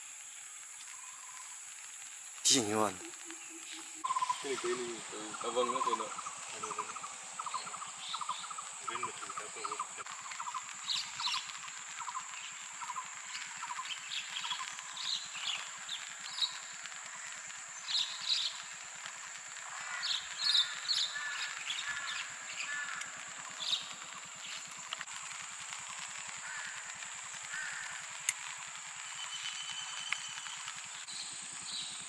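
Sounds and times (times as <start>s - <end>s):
high-pitched insect drone: 0.0s - 13.8s.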